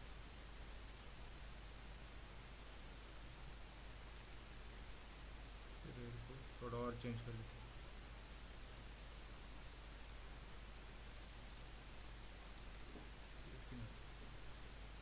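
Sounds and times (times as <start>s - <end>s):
steady background hiss: 0.0s - 15.0s
computer mouse clicking: 8.7s - 10.2s, 11.2s - 11.7s, 12.4s - 13.8s.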